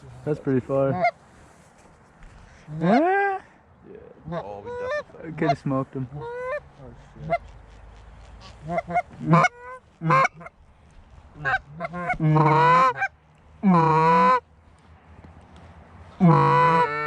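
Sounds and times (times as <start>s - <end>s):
goose clucking: 0.9s - 1.2s, 4.2s - 10.6s, 11.3s - 14.5s, 16.0s - 17.0s
goose honking: 0.9s - 1.2s, 4.2s - 10.6s, 11.3s - 14.5s, 16.1s - 17.0s.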